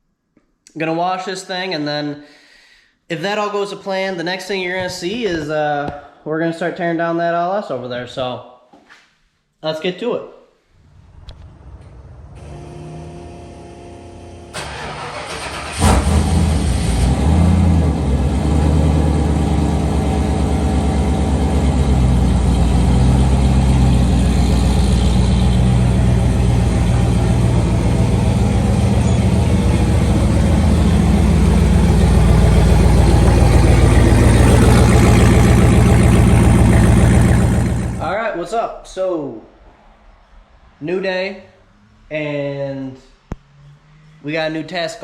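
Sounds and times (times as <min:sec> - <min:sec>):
car engine idling: 0:10.8 - 0:38.1.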